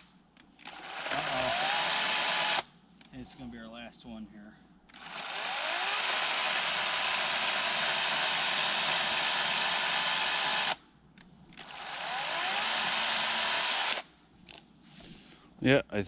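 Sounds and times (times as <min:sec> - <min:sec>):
battery chainsaw cutting wood: 0:00.6 - 0:02.7, 0:05.0 - 0:10.8, 0:11.6 - 0:14.1.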